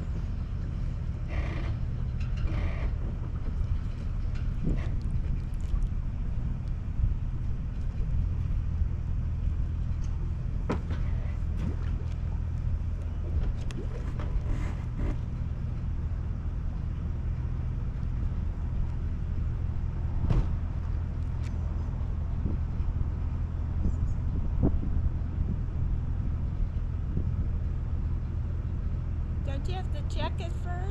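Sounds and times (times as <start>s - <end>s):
engine idling: 0.0s - 24.4s.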